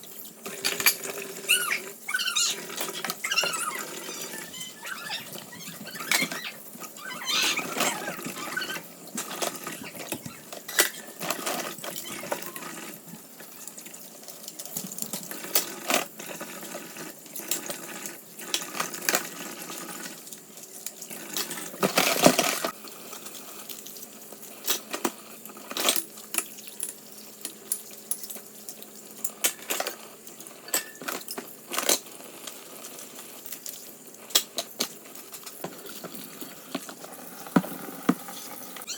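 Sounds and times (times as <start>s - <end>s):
water running and splashing: 0.0s - 15.3s
dishes and utensils clinking: 0.4s - 12.8s, 30.6s - 32.0s.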